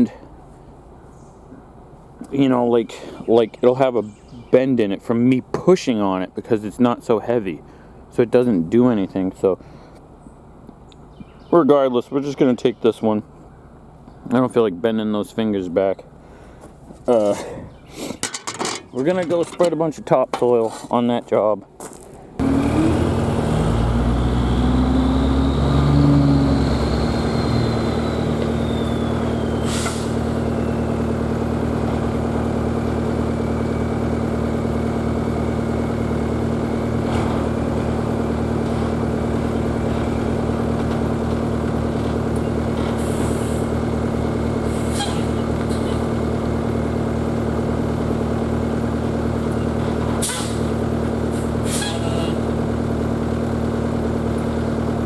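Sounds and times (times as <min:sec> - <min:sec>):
diesel truck engine running: 0:22.4 - 0:55.0
air hissing bursts: 0:29.5 - 0:30.4.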